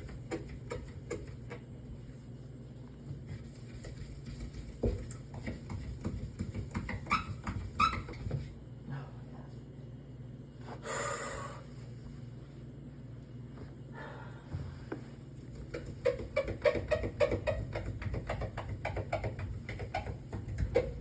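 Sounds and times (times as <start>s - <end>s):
steady low hum: 0.0s - 21.0s
scrubbing inside refrigerator: 3.1s - 8.6s
knocks against plastic: 15.5s - 21.0s.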